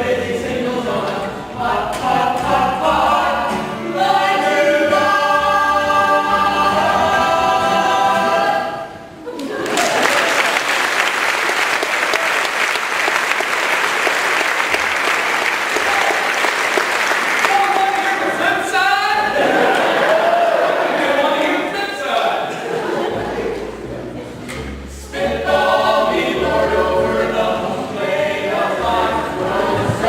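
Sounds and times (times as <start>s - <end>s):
choir singing: 0.0s - 9.2s, 18.2s - 21.7s, 22.4s - 30.0s
audience applauding: 9.3s - 18.5s.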